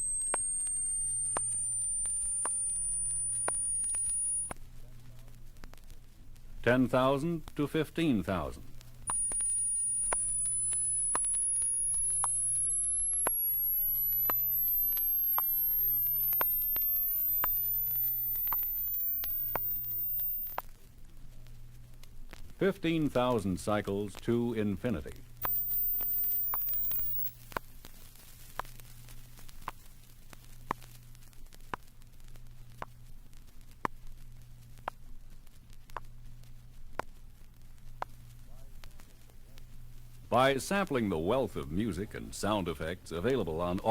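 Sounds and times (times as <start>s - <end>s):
high test tone sweeping upward: 0.0s - 4.5s, 9.1s - 20.6s, 25.4s - 27.4s
low hum: 0.0s - 4.6s, 8.8s - 20.6s, 25.4s - 27.4s
record surface clicks: 0.0s - 4.6s, 8.3s - 20.7s, 25.4s - 28.8s
vinyl surface hiss: 0.0s - 43.9s.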